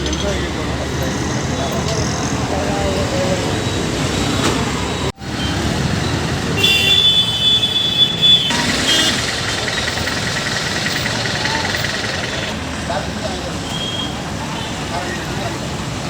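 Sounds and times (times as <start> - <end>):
road traffic noise: 0.0 - 16.0
vehicle horn high steady tone: 6.6 - 9.4.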